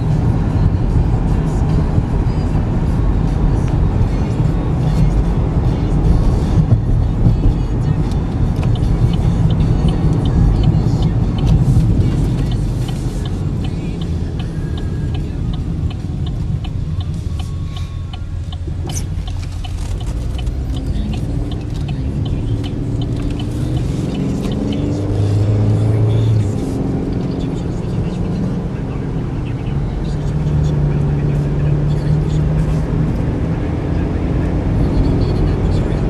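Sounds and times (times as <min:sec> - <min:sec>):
car cabin engine rumble: 0:00.0 - 0:36.0
light regular ticking: 0:03.6 - 0:25.0.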